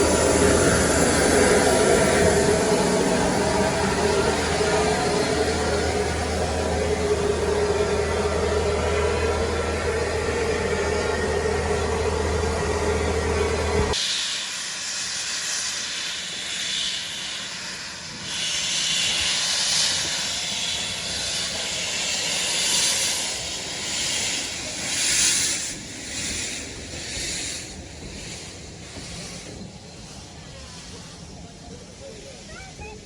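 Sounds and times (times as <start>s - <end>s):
steady low hum: 0.0s - 14.0s
steam locomotive hissing: 0.0s - 33.0s.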